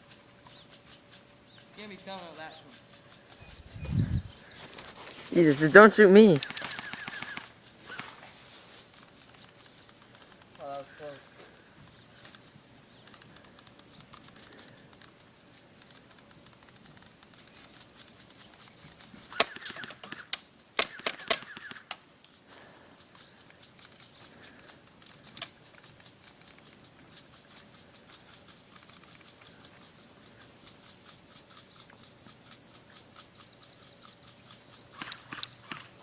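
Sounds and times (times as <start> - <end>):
airsoft gun firing: 6.2 - 8.2, 19.3 - 22.0.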